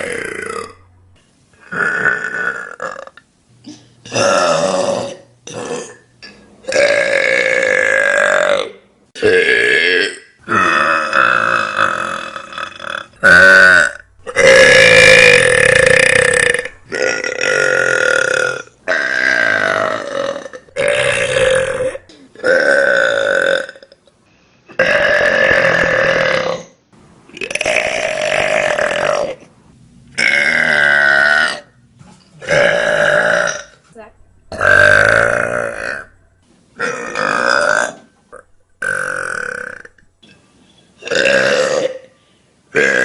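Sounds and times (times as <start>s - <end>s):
woman burping: 1.6s - 24.0s, 32.4s - 33.8s, 34.5s - 36.2s, 41.0s - 42.1s.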